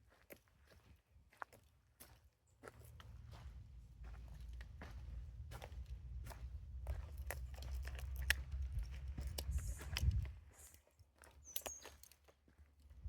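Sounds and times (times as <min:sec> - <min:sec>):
footsteps crunching on trail: 0:00.0 - 0:13.0
low rumble: 0:03.0 - 0:10.4.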